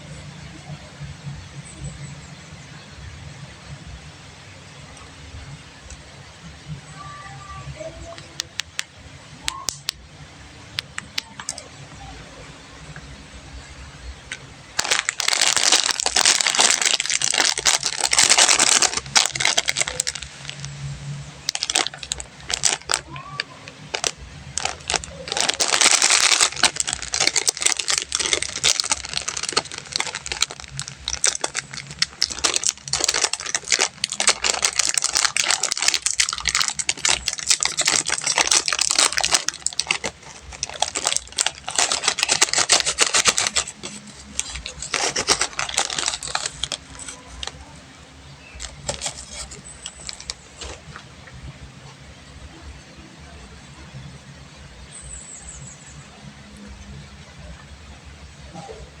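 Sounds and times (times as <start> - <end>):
plastic candy wrappers crinkling: 7.0 - 10.0, 10.7 - 11.9, 14.0 - 51.3.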